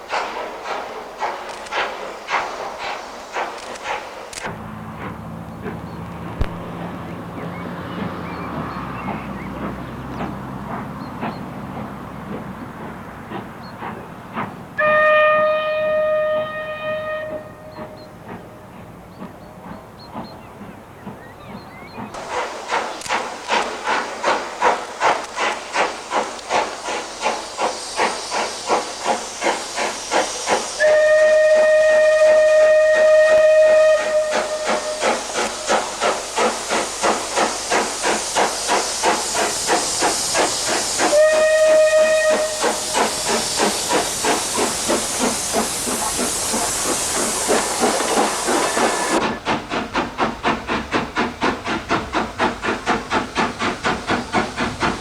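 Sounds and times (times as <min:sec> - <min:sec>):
steam hissing: 0:00.0 - 0:55.0
steam locomotive chuffing: 0:00.0 - 0:55.0
steam whistle blasts: 0:14.8 - 0:18.2, 0:30.8 - 0:35.9, 0:40.7 - 0:49.2.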